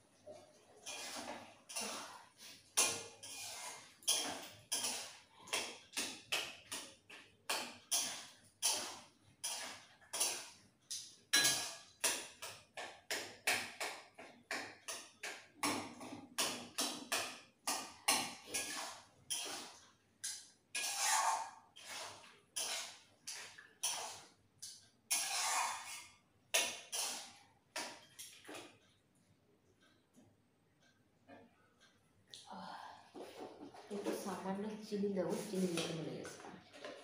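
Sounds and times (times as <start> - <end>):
metal spatula scraping a pan: 0.2 - 13.9, 14.8 - 28.8.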